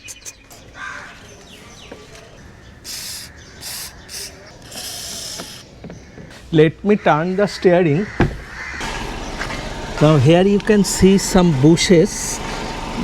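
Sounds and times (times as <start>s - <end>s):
aerosol spray can hissing: 2.9s - 5.6s.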